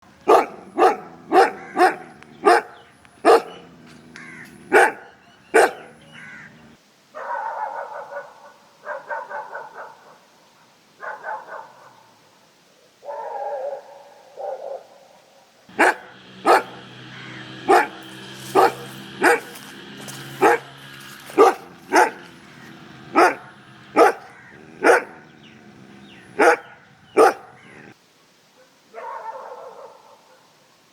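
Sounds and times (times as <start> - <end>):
dog barking: 0.2 - 6.5, 7.1 - 10.3, 11.0 - 12.2, 13.0 - 28.0, 28.6 - 30.5
steady low hum: 15.7 - 28.0.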